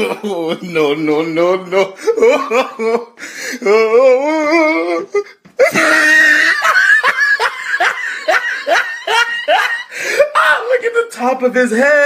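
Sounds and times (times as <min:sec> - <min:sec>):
rapid high laughter: 0:05.6 - 0:10.3.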